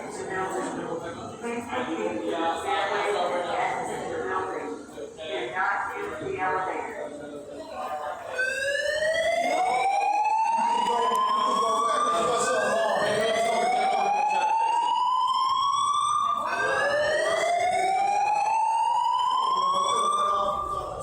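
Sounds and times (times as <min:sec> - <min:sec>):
fire alarm whoop tone: 0:07.8 - 0:21.0.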